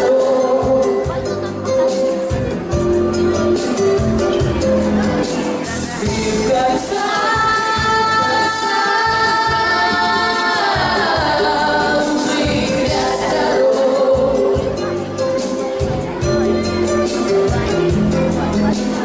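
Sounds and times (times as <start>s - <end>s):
backing track: 0.0s - 19.0s
girls singing pop song: 6.0s - 14.8s.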